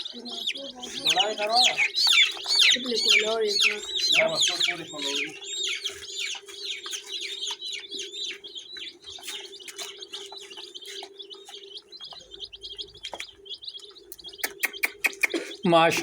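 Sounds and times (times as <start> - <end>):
chicks peeping: 0.0 - 16.0.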